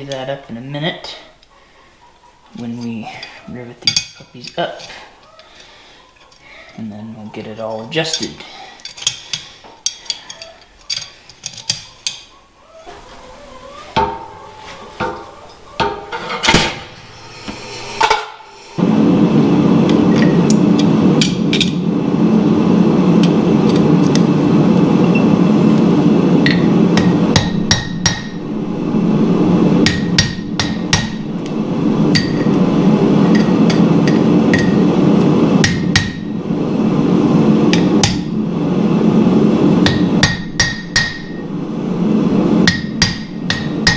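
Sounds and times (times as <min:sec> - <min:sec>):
loud steady roar: 0:18.8 - 0:43.9
hammer striking steel: 0:26.4 - 0:28.5, 0:29.8 - 0:34.8, 0:35.6 - 0:36.3, 0:37.7 - 0:38.3, 0:39.8 - 0:41.4, 0:42.6 - 0:43.9.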